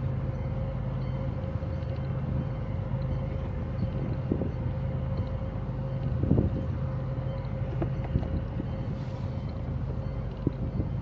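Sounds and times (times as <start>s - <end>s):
boat motor humming: 0.0s - 11.0s
wind on microphone: 3.8s - 4.7s, 6.1s - 6.8s.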